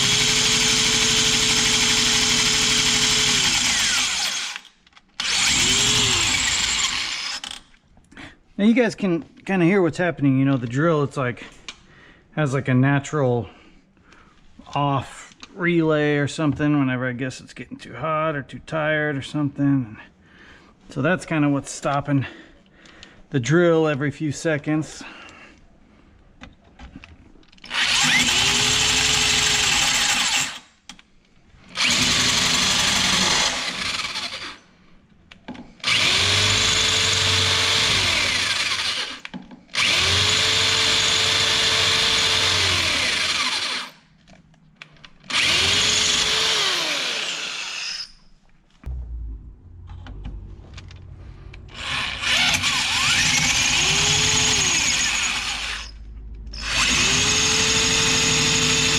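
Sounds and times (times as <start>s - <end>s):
power drill boring into steel: 0.0s - 7.6s, 27.6s - 30.7s, 31.7s - 34.6s, 35.8s - 44.0s, 45.3s - 48.2s, 51.7s - 58.9s.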